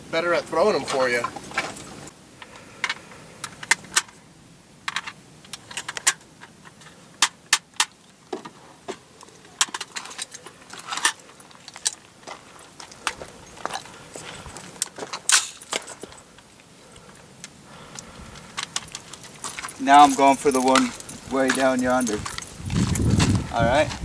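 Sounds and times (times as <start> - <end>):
light sharp clicks and clinks: 4.9 - 23.9.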